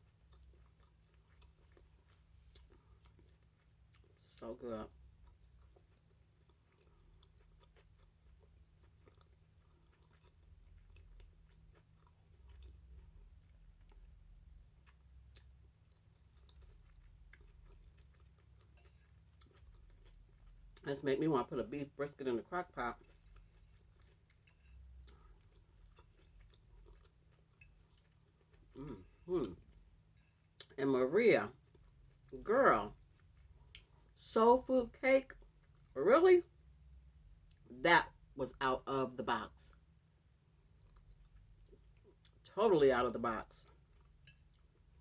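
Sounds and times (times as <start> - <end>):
chewing food: 0.0 - 30.8, 31.4 - 38.2, 39.7 - 45.0
low steady hum: 0.0 - 45.0.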